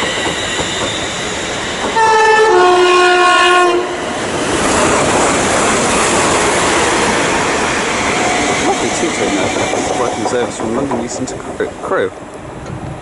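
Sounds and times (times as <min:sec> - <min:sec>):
train rushing through station: 0:00.0 - 0:13.0
train two-tone horn: 0:01.9 - 0:04.0.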